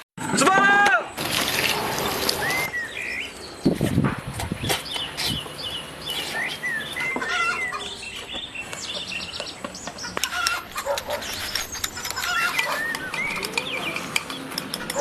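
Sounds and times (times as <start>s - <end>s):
birds chirping: 1.0s - 15.0s.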